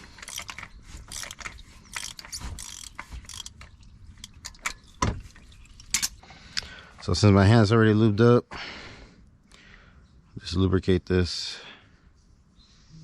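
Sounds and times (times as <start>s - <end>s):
ratchet clicking: 0.0s - 4.8s.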